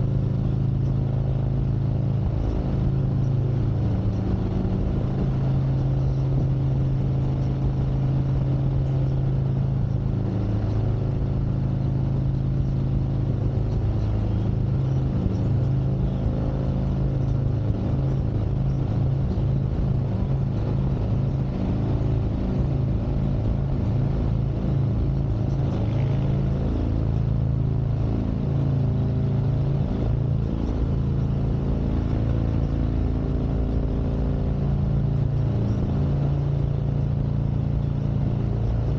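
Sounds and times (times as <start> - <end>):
motorcycle engine running: 0.0 - 38.9.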